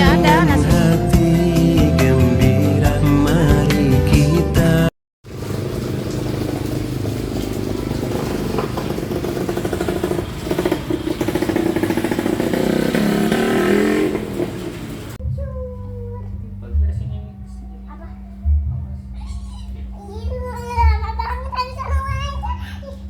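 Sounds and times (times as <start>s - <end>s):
music: 0.0s - 4.9s, 15.2s - 23.0s
vehicle engine running: 5.2s - 19.2s.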